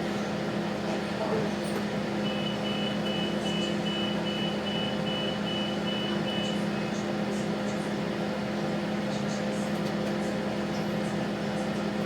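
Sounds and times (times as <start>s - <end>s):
diesel railcar hum: 0.0s - 12.0s
train door warning beeper: 2.2s - 6.6s.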